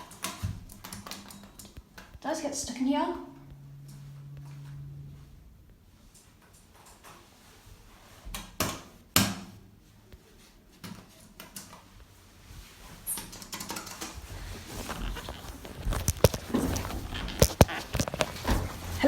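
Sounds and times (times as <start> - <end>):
rustling: 13.9 - 19.0.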